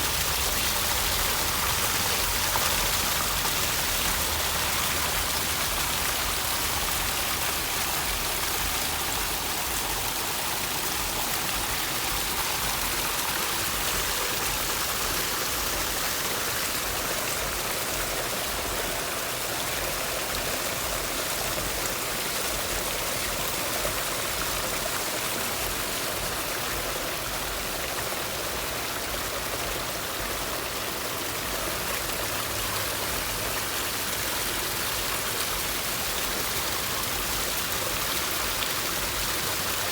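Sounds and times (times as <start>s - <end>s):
water feature splashing: 0.0s - 39.9s.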